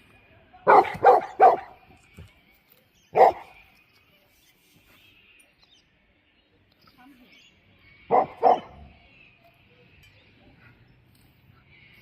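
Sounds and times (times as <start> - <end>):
dog barking: 0.7 - 1.8, 3.2 - 3.5, 8.1 - 8.8.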